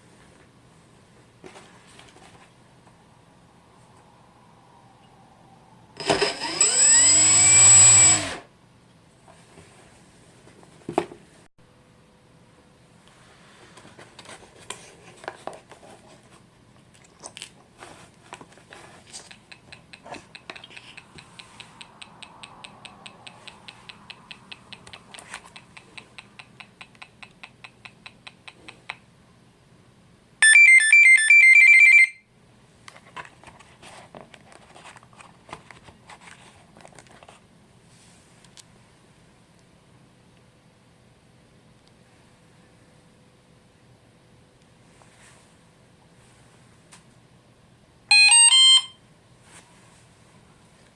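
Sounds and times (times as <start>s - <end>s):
electronic ticks: 21.1s - 28.3s
high alternating beeps: 48.1s - 48.9s.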